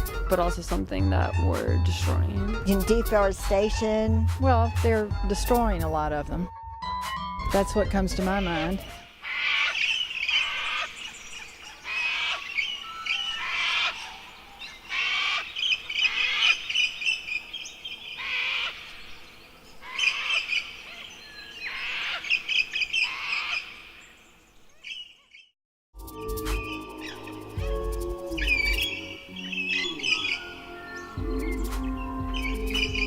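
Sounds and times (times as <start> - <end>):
birds chirping and trilling: 7.6 - 25.5, 26.2 - 33.0.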